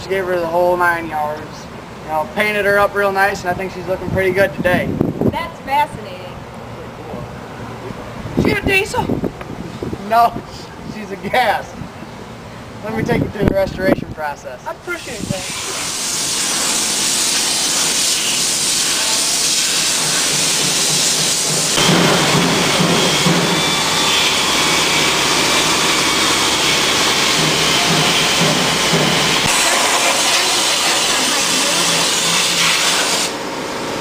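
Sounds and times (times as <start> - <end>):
compressed-air tool hissing: 15.0 - 21.8, 29.2 - 33.4
low hum: 21.8 - 30.2
faint high whine: 21.8 - 31.7.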